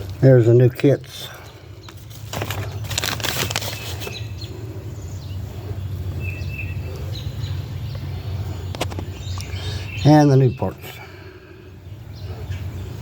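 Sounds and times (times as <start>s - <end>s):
bird chirps: 3.7s - 11.0s.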